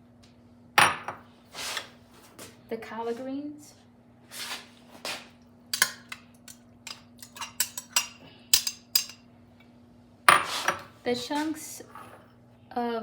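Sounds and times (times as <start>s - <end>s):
spoon scraping against a dish: 5.8s - 9.2s.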